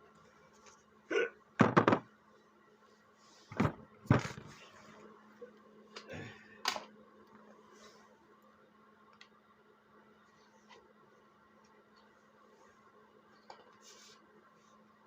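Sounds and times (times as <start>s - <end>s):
faint steady hum: 0.0s - 15.0s
hard objects knocking down: 1.6s - 2.1s.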